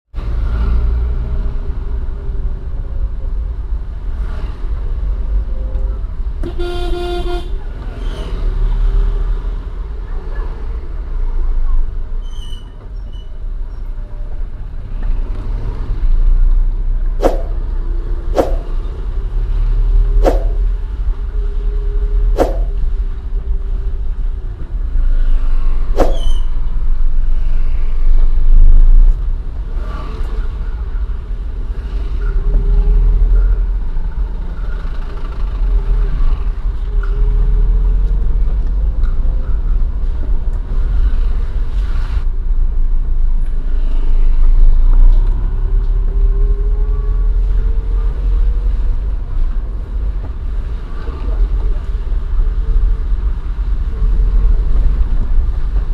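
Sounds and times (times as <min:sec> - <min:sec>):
car engine low rumble: 0:00.2 - 0:06.4, 0:12.8 - 0:55.9
sharp clicks or knocks: 0:18.4 - 0:18.7.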